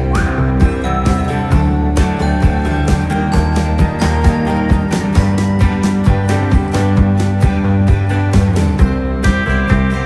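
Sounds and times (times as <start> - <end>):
country acoustic guitar music: 0.0 - 10.0.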